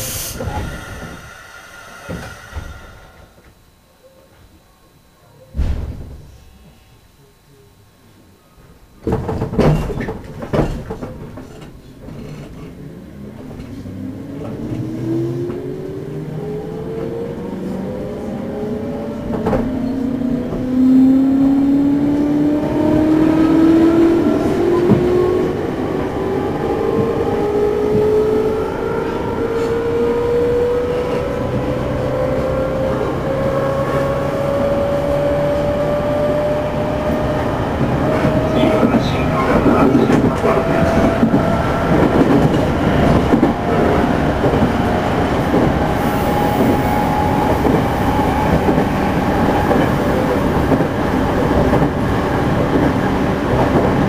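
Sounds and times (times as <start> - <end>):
electric train motor whine: 0.0 - 4.6, 12.3 - 53.6
train car clunks: 5.5 - 6.6, 9.0 - 12.8, 37.7 - 44.8.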